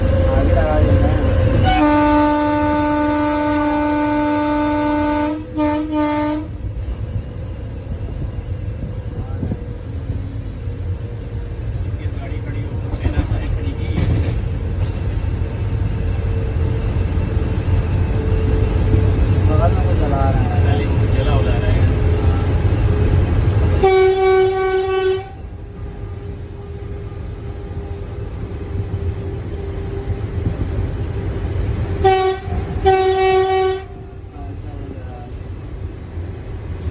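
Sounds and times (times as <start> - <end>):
moving train rumble: 0.0 - 36.9
train horn: 1.5 - 6.6, 23.7 - 28.2, 32.0 - 34.2.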